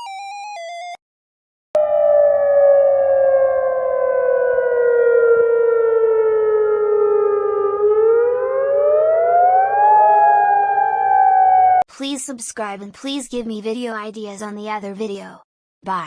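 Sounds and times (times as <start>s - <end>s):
siren wail: 1.8s - 11.8s.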